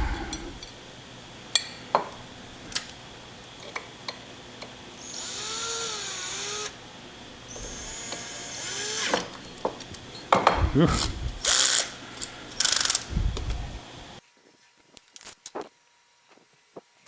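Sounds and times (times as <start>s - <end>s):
powered screwdriver whirring: 5.0s - 6.8s, 7.4s - 10.1s, 11.0s - 13.8s.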